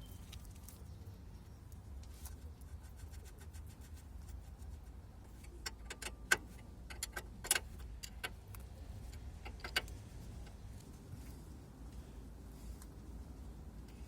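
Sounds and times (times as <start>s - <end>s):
metallic clicks and knocks of tools: 5.4s - 10.6s.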